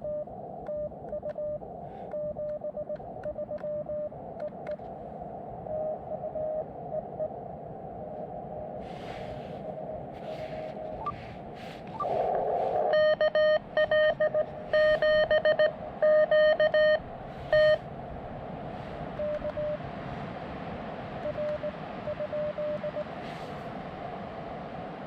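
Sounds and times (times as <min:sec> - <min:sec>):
faint morse signal: 0:00.0 - 0:04.8, 0:05.6 - 0:07.4, 0:11.9 - 0:17.9, 0:19.2 - 0:19.9, 0:21.2 - 0:23.2
receiver hiss: 0:00.0 - 0:18.0
buzzy morse code tone: 0:12.8 - 0:17.8.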